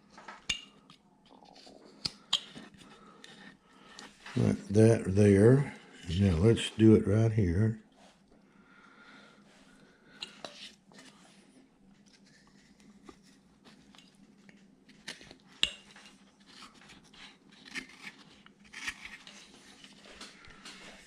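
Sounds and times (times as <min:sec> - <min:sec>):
faint steady hum: 0:00.0 - 0:21.0
knife carving wood: 0:16.4 - 0:20.1.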